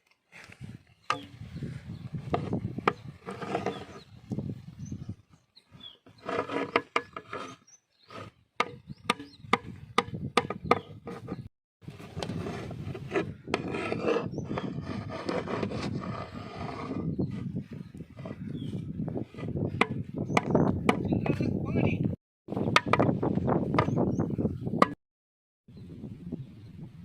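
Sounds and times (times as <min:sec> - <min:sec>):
ladle scraping in a pot: 0:02.3 - 0:04.1, 0:06.0 - 0:08.3.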